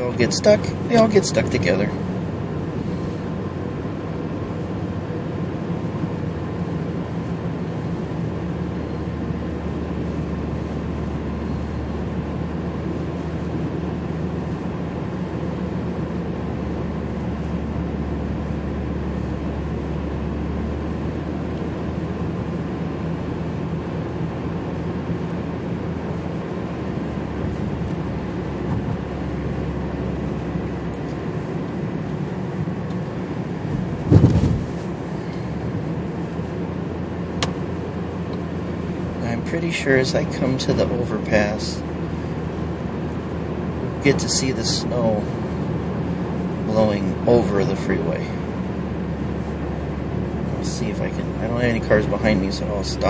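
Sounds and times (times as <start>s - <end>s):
car engine humming: 0.0s - 53.0s
road noise: 0.0s - 53.0s.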